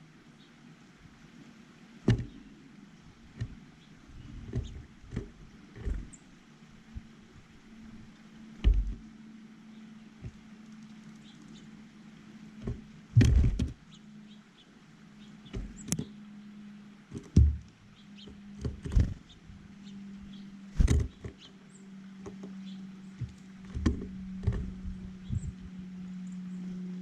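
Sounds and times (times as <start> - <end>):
steady low hum: 0.0 - 27.0
birds knocking and pecking: 2.0 - 7.0, 7.9 - 9.1, 12.5 - 13.8, 15.4 - 16.2, 17.1 - 19.4, 20.7 - 25.6.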